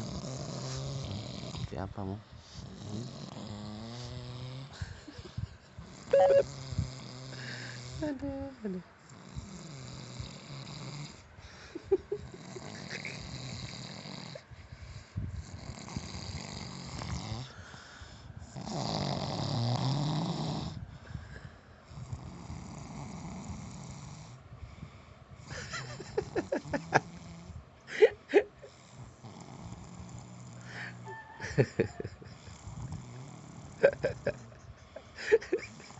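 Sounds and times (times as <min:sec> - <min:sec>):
person snoring: 0:00.0 - 0:01.7, 0:02.6 - 0:04.8, 0:06.0 - 0:08.0, 0:11.8 - 0:14.4, 0:25.6 - 0:27.4, 0:28.0 - 0:31.1, 0:32.3 - 0:35.9.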